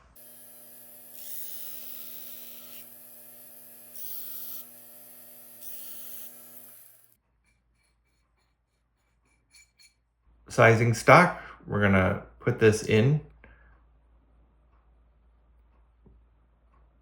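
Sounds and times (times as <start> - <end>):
rotary tool cutting metal: 0.0 - 7.2.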